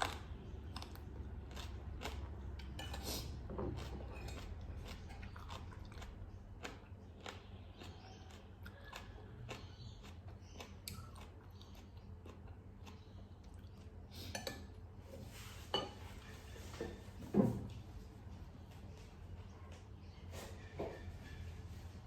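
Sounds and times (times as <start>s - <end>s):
chewing: 0.0s - 14.5s
cutlery scraping a dish: 2.6s - 4.6s, 15.7s - 16.0s.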